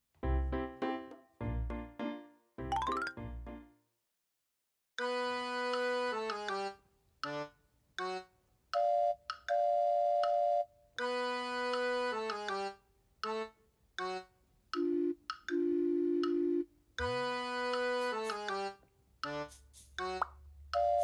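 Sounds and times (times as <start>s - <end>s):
simple melody of held notes: 0.2s - 3.7s, 8.8s - 13.4s, 20.8s - 21.0s.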